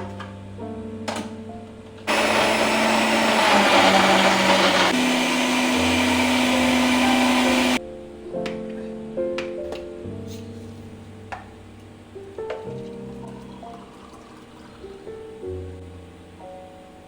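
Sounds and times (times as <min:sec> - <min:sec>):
electric blender whirring: 0:02.1 - 0:07.8.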